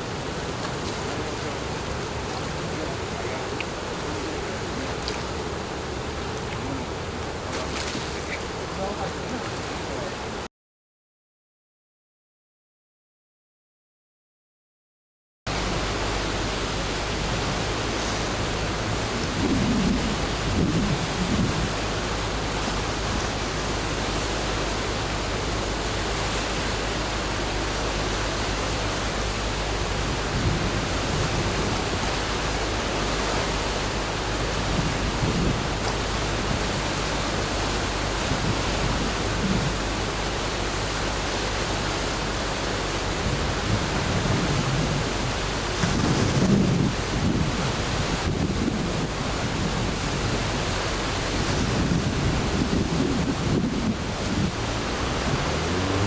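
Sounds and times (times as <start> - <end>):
river rushing roar: 0.0 - 10.5, 15.5 - 56.0
wind buffeting microphone: 15.6 - 56.0.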